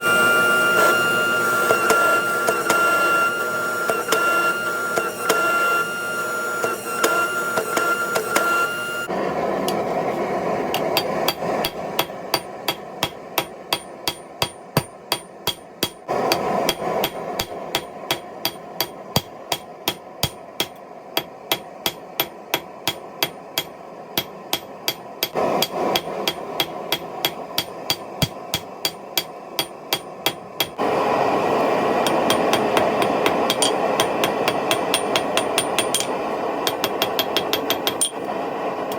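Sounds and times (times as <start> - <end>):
high ringing tone: 0.0 - 9.1.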